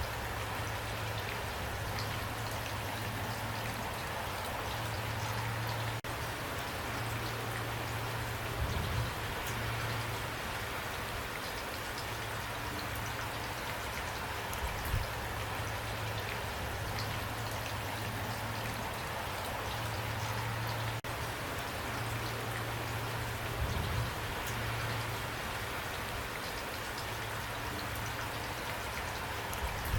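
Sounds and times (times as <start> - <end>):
steady rain falling: 0.0 - 29.9.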